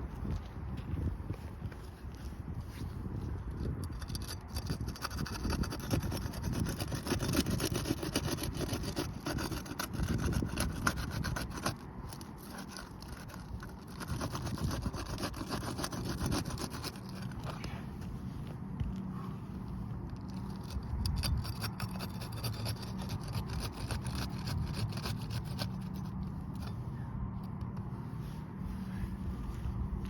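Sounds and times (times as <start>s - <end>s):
roof shingles being scraped loose: 3.9s - 18.2s, 20.1s - 26.7s.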